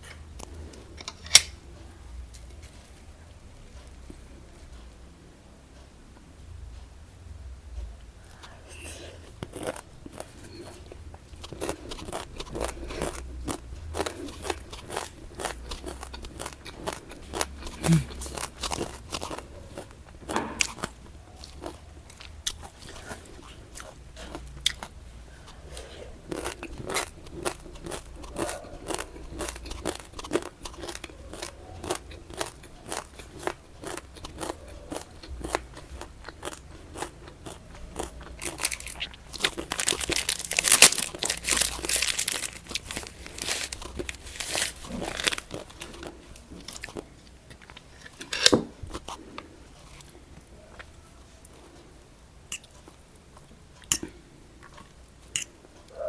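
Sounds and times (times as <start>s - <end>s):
crunchy food being chewed: 8.2s - 56.0s.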